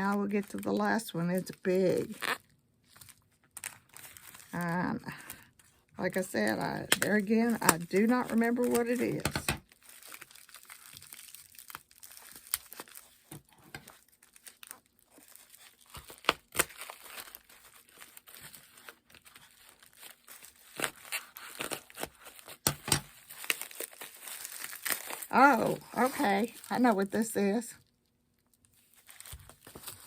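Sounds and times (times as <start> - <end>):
packing wrap crinkling and tearing: 0.0 - 30.0.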